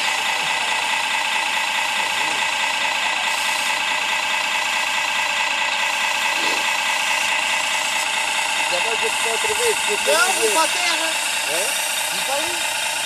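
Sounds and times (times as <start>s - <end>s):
high whine of small motors: 5.6s - 13.0s.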